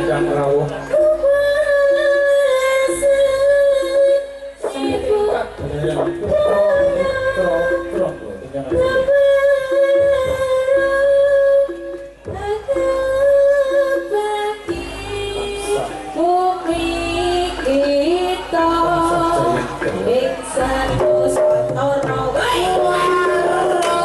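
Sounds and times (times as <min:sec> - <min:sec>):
drums: 0:00.0 - 0:24.0.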